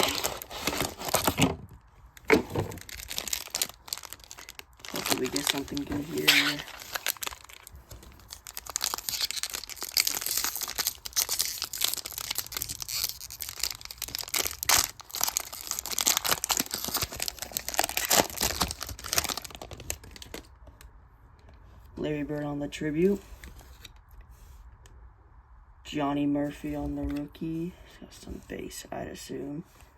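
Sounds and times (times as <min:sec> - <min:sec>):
wrapper tearing and crinkling: 0:00.0 - 0:01.6, 0:02.2 - 0:20.5.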